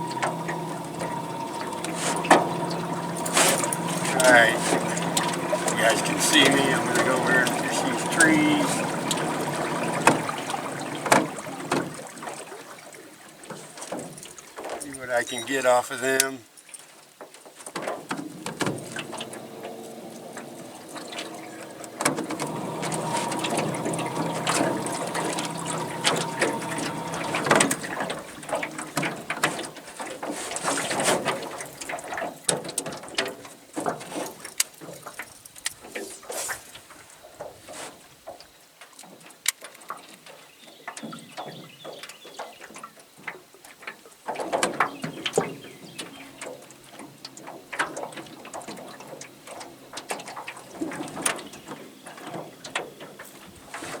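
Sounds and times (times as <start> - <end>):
boat motor running: 0.0 - 16.0, 17.9 - 37.6
water lapping at hull: 0.0 - 54.0.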